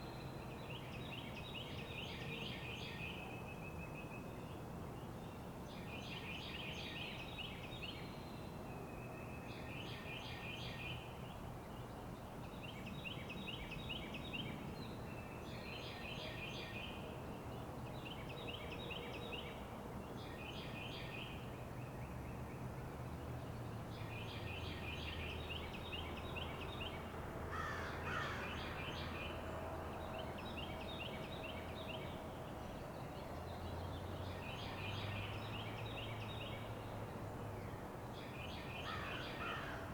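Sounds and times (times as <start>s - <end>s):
highway traffic rumble: 21.3s - 39.9s.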